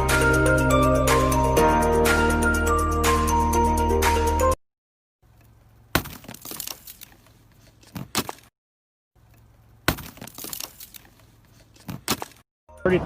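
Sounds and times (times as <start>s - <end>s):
background music: 0.0s - 4.6s.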